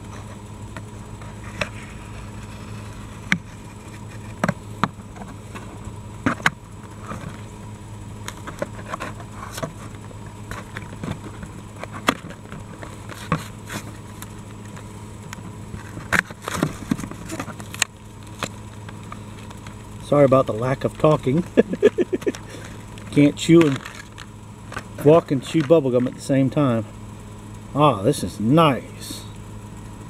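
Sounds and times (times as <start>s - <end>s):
steady low hum: 0.0s - 30.0s
packaging crinkling and rustling: 23.6s - 24.9s.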